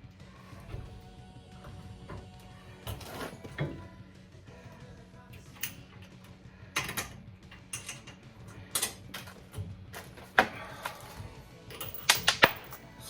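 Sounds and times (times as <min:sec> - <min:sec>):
metallic clinks of hand tools: 0:06.8 - 0:09.3, 0:11.7 - 0:13.0.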